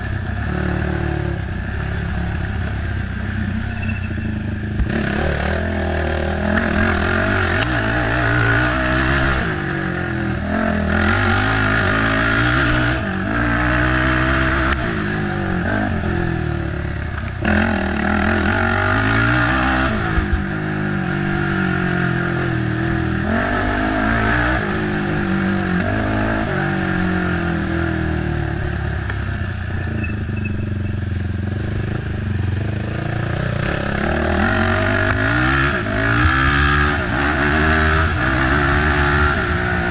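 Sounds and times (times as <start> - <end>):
atv engine revving: 0.0 - 39.9.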